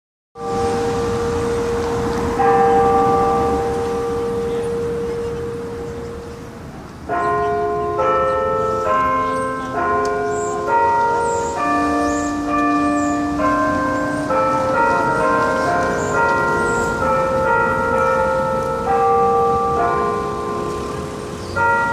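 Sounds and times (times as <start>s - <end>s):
tower bells ringing: 0.4s - 21.9s.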